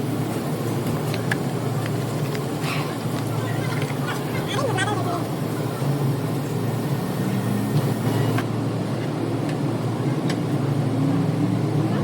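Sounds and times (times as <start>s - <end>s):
road noise: 0.0s - 12.0s.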